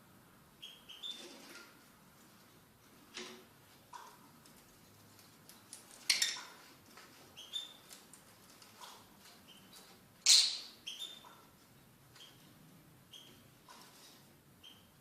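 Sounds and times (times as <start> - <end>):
birds chirping: 8.7 - 11.5.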